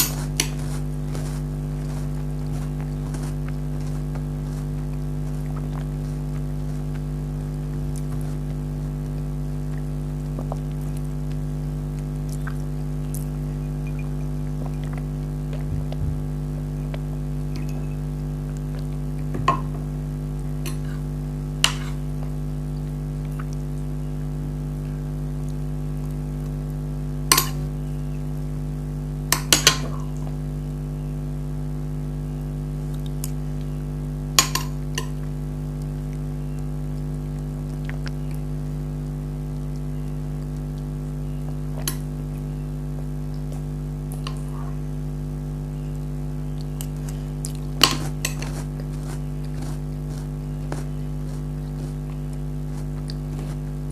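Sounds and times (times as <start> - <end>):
steady low hum: 0.0 - 53.9.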